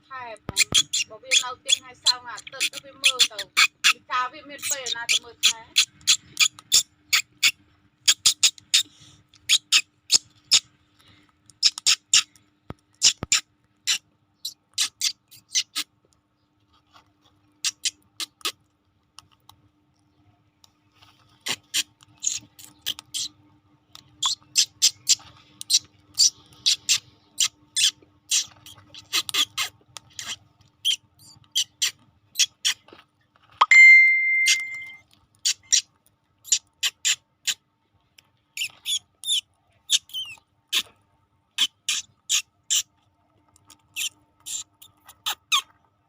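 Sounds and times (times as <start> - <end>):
parrot beaks clicking: 11.5 - 12.3.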